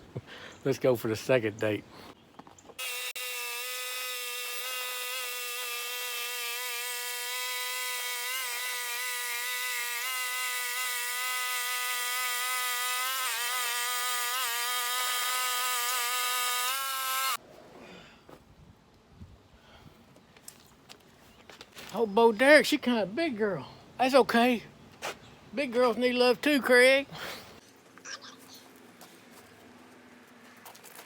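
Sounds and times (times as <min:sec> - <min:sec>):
band sawmill whining: 0:02.7 - 0:17.4.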